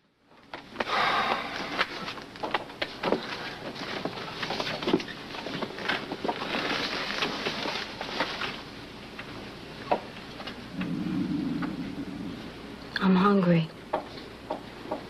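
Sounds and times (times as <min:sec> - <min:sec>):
stomach gurgling and rumbling: 0:10.6 - 0:13.0.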